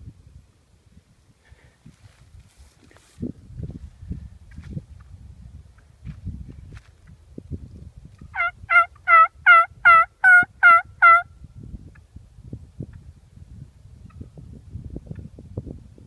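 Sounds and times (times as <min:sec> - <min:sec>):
faint low rustling: 0:01.1 - 0:08.3.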